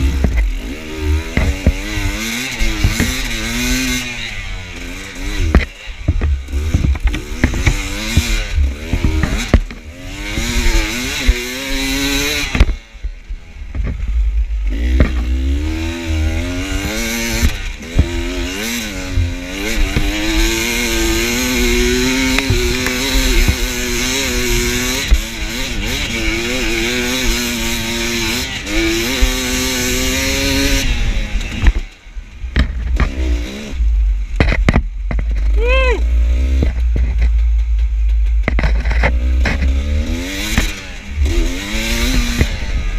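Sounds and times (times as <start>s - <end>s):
dirt bike engine revving: 0.0s - 42.9s
bike knocking on ground: 1.2s - 2.0s, 2.6s - 3.6s, 5.4s - 10.6s, 34.3s - 35.6s.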